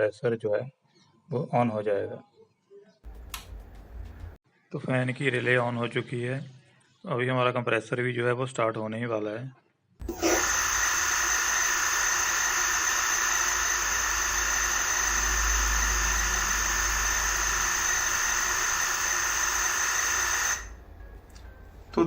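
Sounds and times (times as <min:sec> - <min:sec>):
compressor high-pitched whine: 0:10.0 - 0:20.9
low hum: 0:11.4 - 0:19.7.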